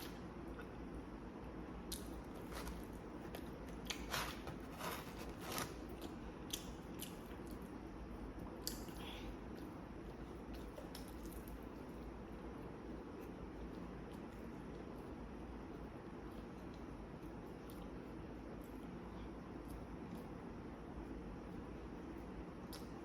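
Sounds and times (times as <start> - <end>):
person chewing crunchy food: 1.9 - 7.7.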